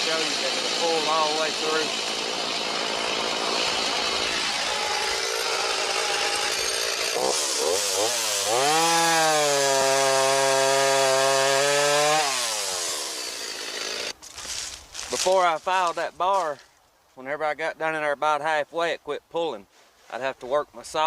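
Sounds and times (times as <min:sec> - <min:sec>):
chainsaw cutting log: 0:00.0 - 0:16.5.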